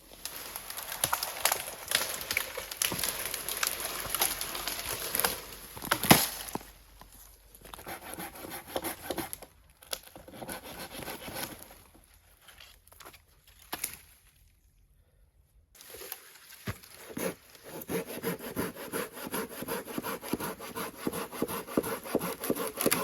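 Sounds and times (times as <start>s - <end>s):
dry twigs rustling and crackling: 0.0s - 7.3s.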